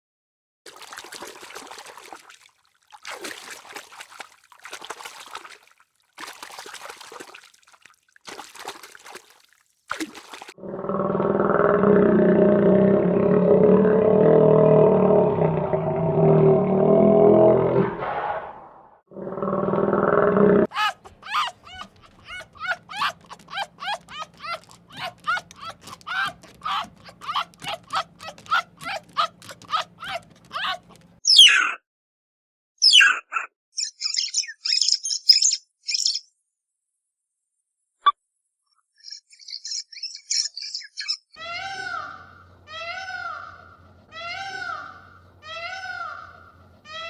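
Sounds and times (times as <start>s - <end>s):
water trickling and splashing: 0.7s - 10.6s, 20.6s - 31.2s
deep rough animal roar: 10.6s - 20.7s
high-pitched yelping calls: 20.7s - 31.8s.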